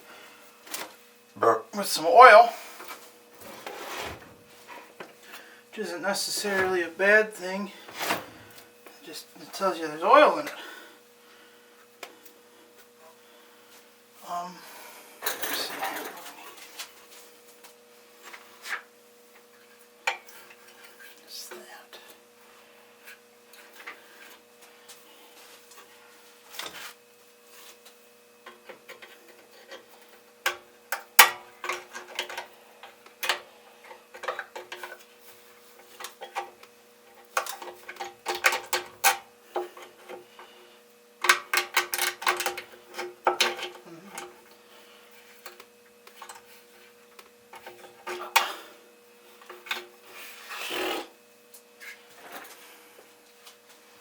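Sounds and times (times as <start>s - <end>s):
faint steady hum: 0.0s - 54.0s
hand tools clicking and knocking on metal: 35.9s - 40.2s, 41.2s - 44.3s.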